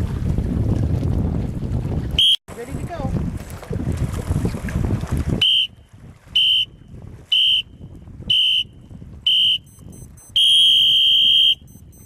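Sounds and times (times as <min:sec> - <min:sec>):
long timer beep: 0:09.3 - 0:12.0
short high-pitched beeps: 0:09.3 - 0:12.0.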